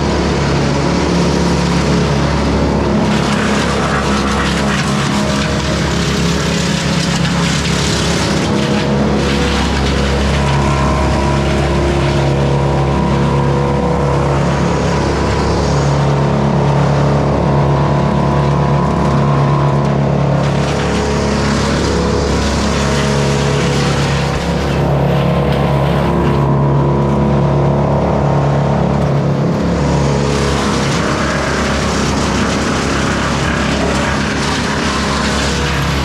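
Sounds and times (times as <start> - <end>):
wood chipper engine drone: 0.0 - 36.0
branches being chipped: 29.2 - 36.0.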